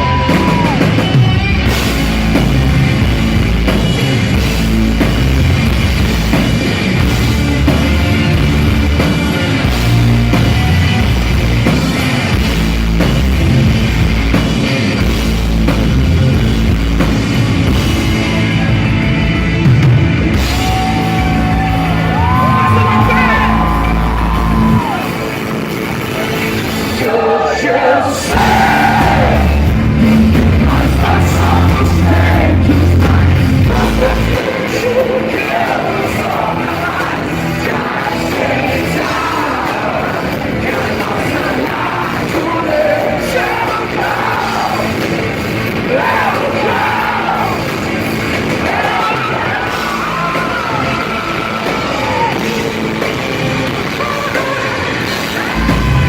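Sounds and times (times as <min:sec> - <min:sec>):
voices singing and yelling: 0:00.0 - 0:03.0, 0:20.2 - 0:56.0
rock band playing loudly: 0:00.0 - 0:56.0.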